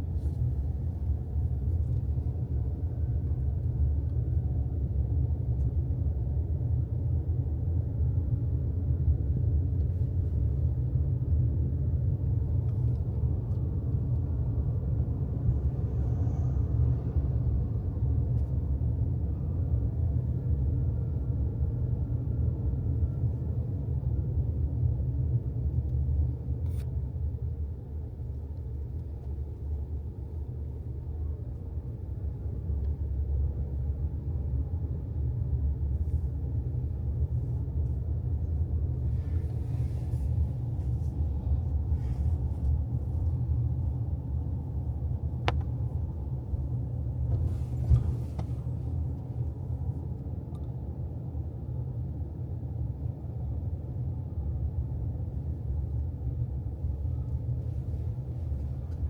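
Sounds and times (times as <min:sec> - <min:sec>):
car rumbling on the move: 0:25.9 - 0:51.9.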